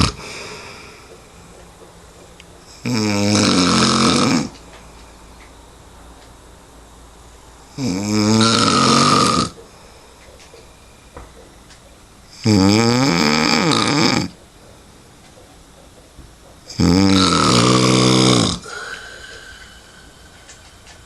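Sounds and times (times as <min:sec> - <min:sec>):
man snoring: 0:00.0 - 0:00.6, 0:02.7 - 0:04.6, 0:07.7 - 0:09.6, 0:12.4 - 0:14.4, 0:16.7 - 0:19.4.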